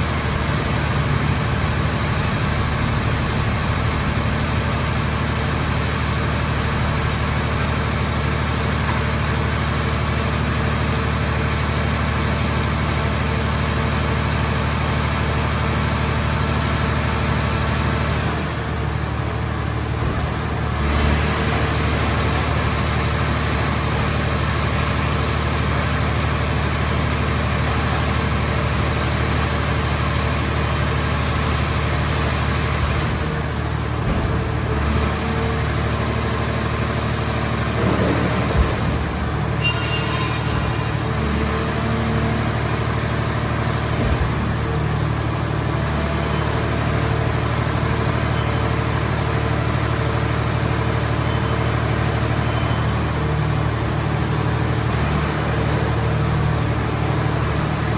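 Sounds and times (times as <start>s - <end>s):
engine humming: 32.4s - 46.4s.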